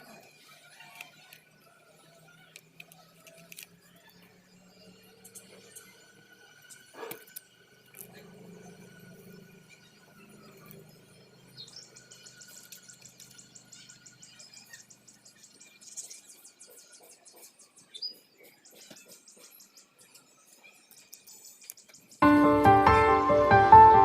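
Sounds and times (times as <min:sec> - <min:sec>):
high-pitched chirping trills: 0:19.0 - 0:24.0.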